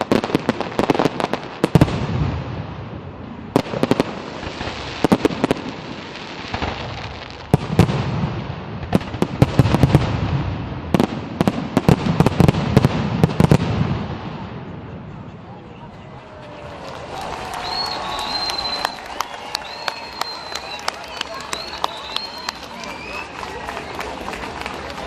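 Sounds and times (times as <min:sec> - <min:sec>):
firework cracks and crackling: 0:00.0 - 0:14.8, 0:16.6 - 0:25.0
echoing firework booms: 0:00.0 - 0:15.0.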